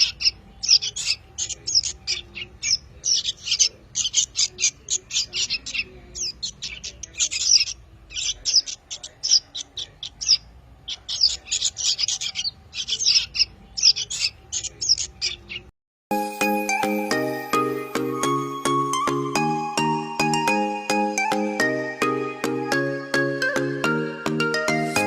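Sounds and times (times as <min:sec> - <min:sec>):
birds chirping: 0:00.0 - 0:25.0
chiming music tune: 0:16.1 - 0:25.0.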